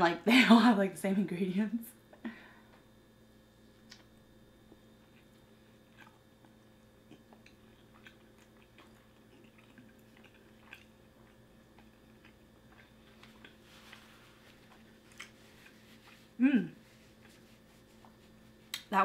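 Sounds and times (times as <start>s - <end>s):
low steady hum: 0.0s - 19.0s
faint chewing with mouth clicks: 3.8s - 18.9s.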